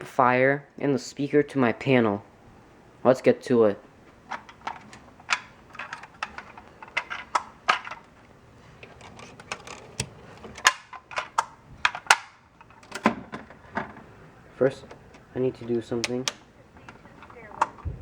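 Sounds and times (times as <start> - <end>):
objects clicking and tapping: 4.3 - 8.2.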